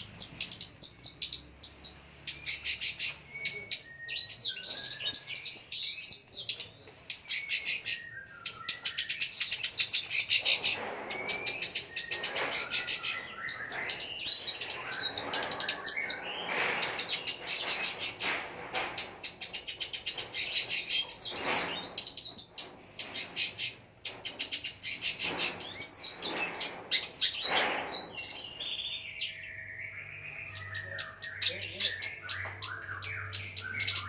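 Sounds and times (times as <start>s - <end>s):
bird singing fast chatter: 0.0s - 34.0s.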